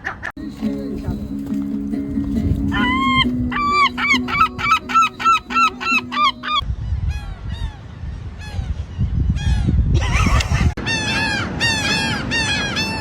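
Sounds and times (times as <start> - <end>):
faint falling gull calls: 2.7 - 6.6
gull yelping calls: 2.7 - 6.6.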